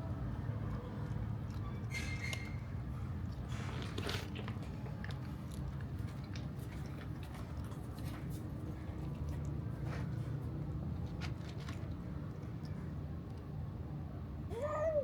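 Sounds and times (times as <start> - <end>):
cats chewing: 3.0 - 13.0.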